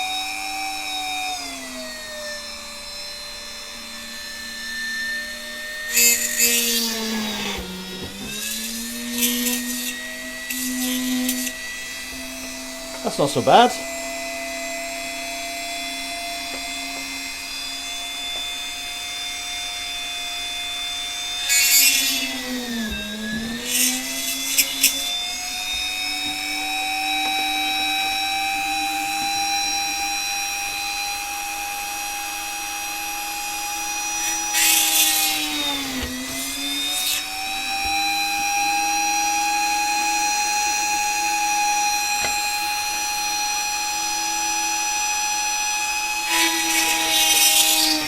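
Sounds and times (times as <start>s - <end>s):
rotary tool whining: 0.0s - 48.0s
scratchy hiss of bit cutting plastic: 5.9s - 11.6s, 12.9s - 14.1s, 21.4s - 30.4s, 34.2s - 37.5s, 46.2s - 48.0s.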